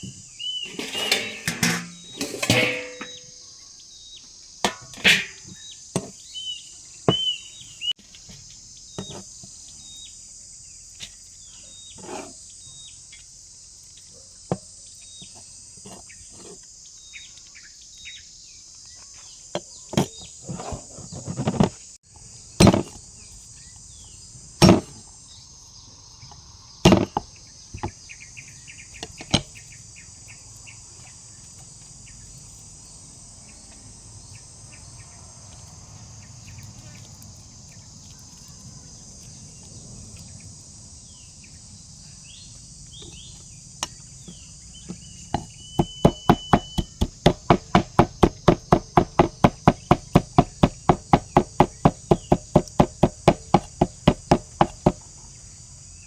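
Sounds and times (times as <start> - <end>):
insects chirring: 0.0 - 56.0
knife chopping on wooden board: 45.4 - 55.0.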